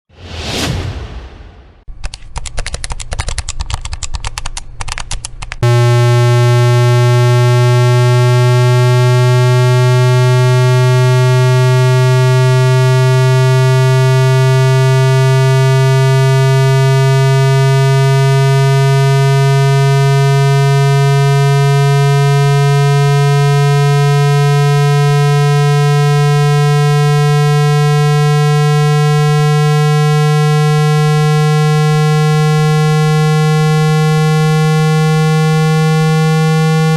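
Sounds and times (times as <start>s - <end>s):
rapid crackle of clicks: 1.9s - 5.6s
low tone rising in pitch: 5.6s - 36.9s.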